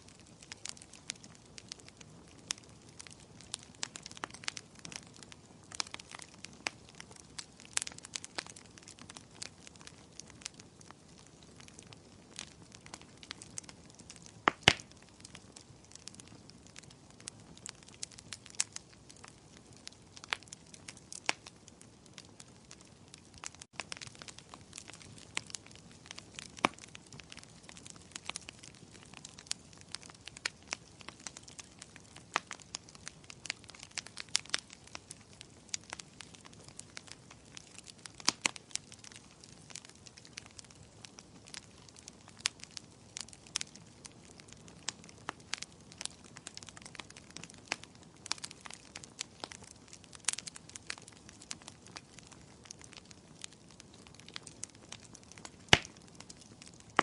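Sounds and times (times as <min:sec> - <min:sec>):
firewood crackling and popping: 0:00.0 - 0:57.0.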